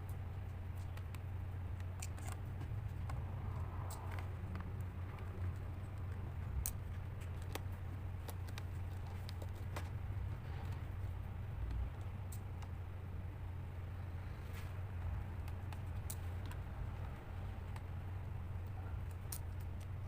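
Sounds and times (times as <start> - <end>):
steady low hum: 0.0 - 20.0
light clicks handling laptop parts: 0.1 - 12.8.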